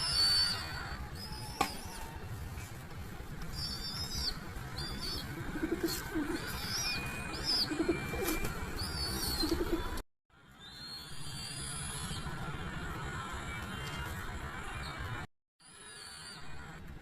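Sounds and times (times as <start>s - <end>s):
dove cooing: 5.4s - 6.7s, 7.3s - 8.5s, 9.2s - 10.0s.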